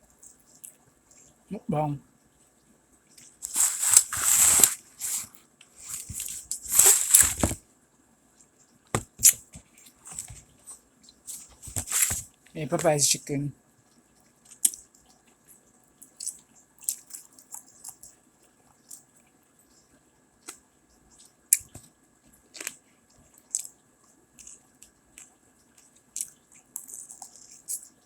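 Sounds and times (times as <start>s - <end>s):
crunching and chewing food: 0.0s - 1.5s, 2.2s - 7.6s, 8.3s - 12.9s, 13.7s - 28.0s.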